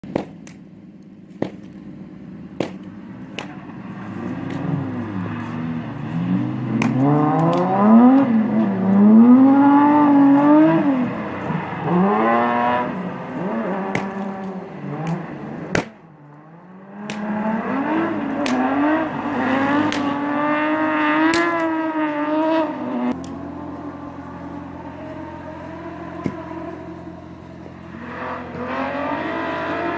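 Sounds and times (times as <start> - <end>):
sharp engine cracks: 0.1 - 5.7, 13.4 - 16.4, 17.0 - 17.5, 18.2 - 18.8, 19.6 - 20.2, 21.2 - 21.8
racing car engine revving: 1.5 - 29.9.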